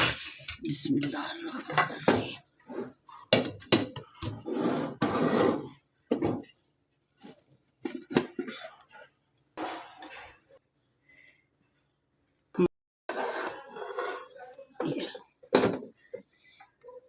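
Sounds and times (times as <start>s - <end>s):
cookware and utensil clattering: 0.0s - 6.5s, 13.1s - 17.0s
utensil scraping pan: 4.1s - 5.8s, 13.1s - 14.6s.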